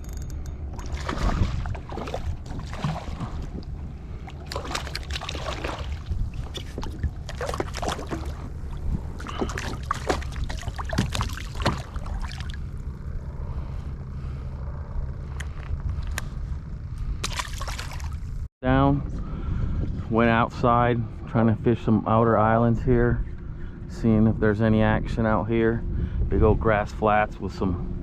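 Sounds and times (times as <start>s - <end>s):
wind rumble on microphone: 0.0s - 28.0s
water splashing against kayak hull: 0.8s - 12.7s.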